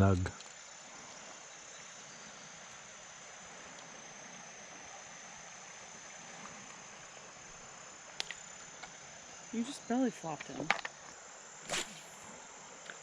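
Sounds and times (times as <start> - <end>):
creek water flowing: 0.0 - 10.4
insects buzzing: 0.0 - 13.0.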